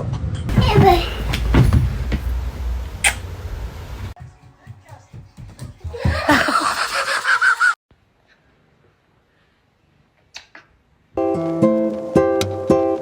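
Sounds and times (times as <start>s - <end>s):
person laughing hard: 5.9s - 7.8s.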